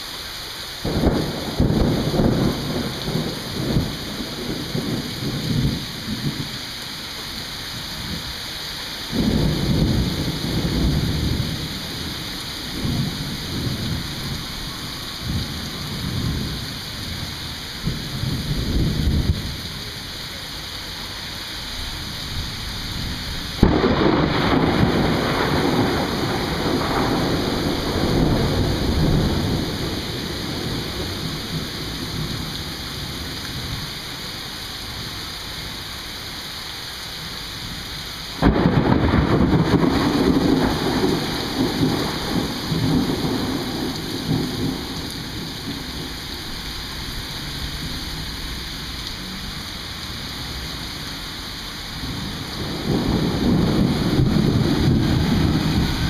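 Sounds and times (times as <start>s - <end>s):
steady rain: 0.0s - 56.0s
thunder bangs rumbling: 0.8s - 6.6s, 9.1s - 19.6s, 22.3s - 33.9s, 38.4s - 48.9s, 52.0s - 56.0s.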